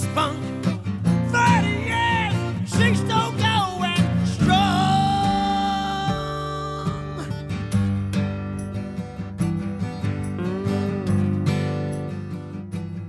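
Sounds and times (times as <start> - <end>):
country song with guitar: 0.0 - 13.0
person singing: 1.4 - 7.4.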